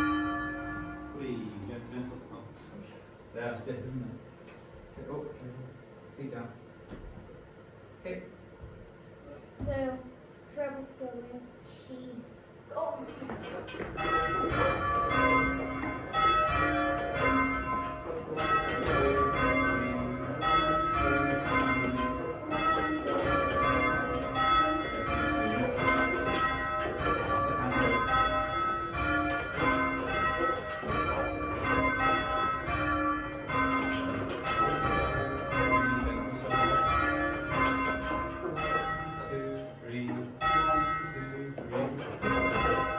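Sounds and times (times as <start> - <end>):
church bells ringing: 0.0 - 2.4, 13.4 - 42.9.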